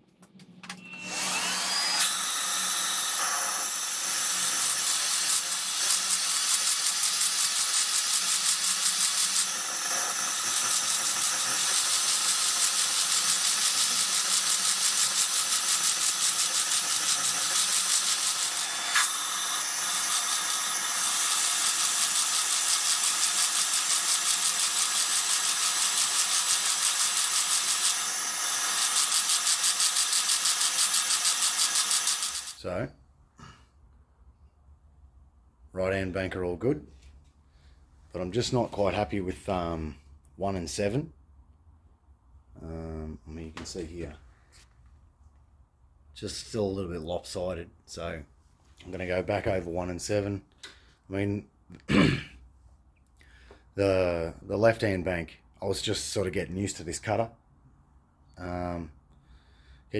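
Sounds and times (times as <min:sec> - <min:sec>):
electric drill cutting metal: 0:00.7 - 0:32.6.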